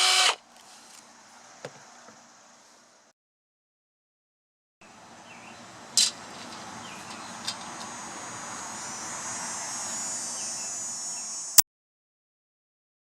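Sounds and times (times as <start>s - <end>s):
insect chorus buzzing: 5.2s - 11.6s.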